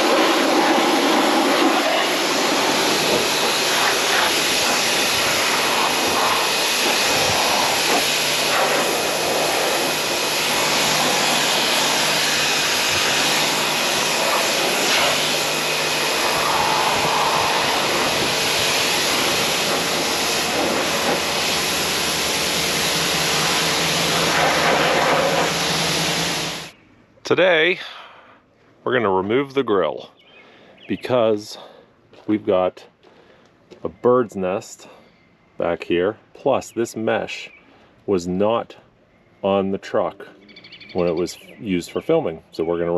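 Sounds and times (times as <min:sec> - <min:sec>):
pressure washer spray hiss: 0:00.0 - 0:26.7
motor hum: 0:00.0 - 0:26.8.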